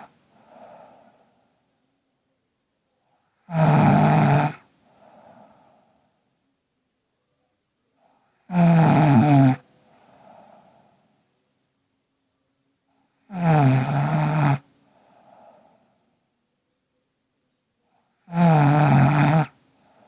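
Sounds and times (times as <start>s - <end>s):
girl snoring: 0.0s - 1.3s, 3.4s - 5.8s, 8.4s - 10.8s, 13.3s - 15.7s, 18.2s - 19.6s
quiet breath: 0.0s - 3.5s, 4.6s - 8.5s, 9.6s - 13.3s, 14.6s - 17.1s, 17.7s - 18.3s, 19.5s - 20.0s.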